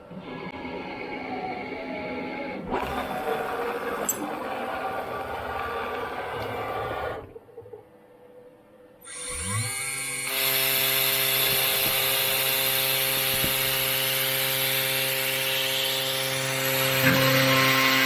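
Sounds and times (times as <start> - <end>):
machine spindle whine: 0.0 - 8.0, 9.0 - 18.0
loud milling cutting noise: 9.0 - 18.0.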